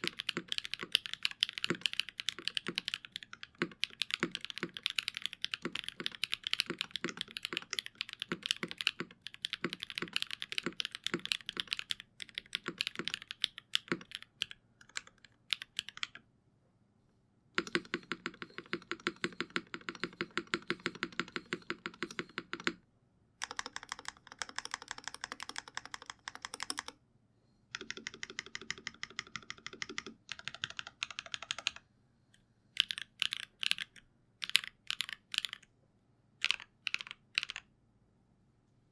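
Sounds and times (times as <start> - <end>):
mechanical keyboard typing: 0.0 - 16.2, 17.6 - 22.8, 23.4 - 27.0, 27.7 - 31.8, 32.8 - 35.6, 36.4 - 37.6.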